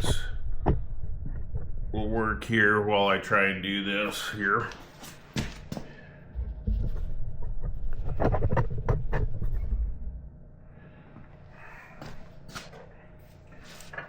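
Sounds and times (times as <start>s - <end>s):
low handling rumble: 0.0s - 4.9s, 5.5s - 13.8s
sharp clicks and knocks: 6.4s - 10.2s.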